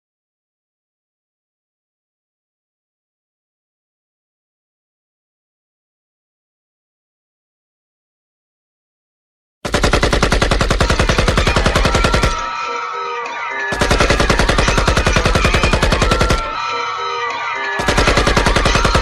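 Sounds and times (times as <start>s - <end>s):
automatic gunfire: 9.7s - 12.5s, 13.7s - 16.6s, 17.8s - 19.0s
people screaming: 10.8s - 19.0s.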